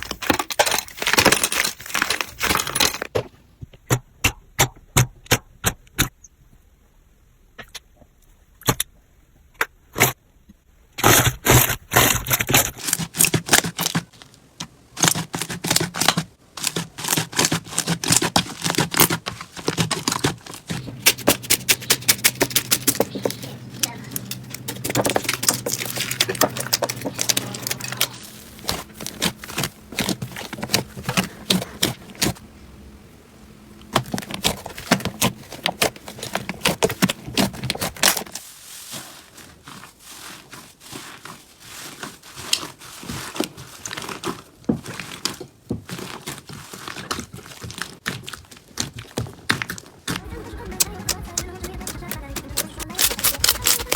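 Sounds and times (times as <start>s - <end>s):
slime squeezed crackling: 51.1s - 53.9s.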